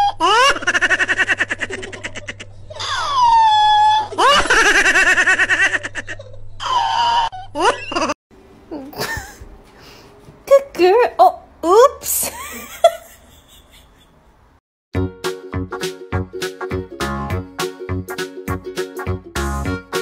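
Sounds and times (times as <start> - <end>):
high-pitched giggling laughter: 0.0 - 8.2, 12.2 - 14.2.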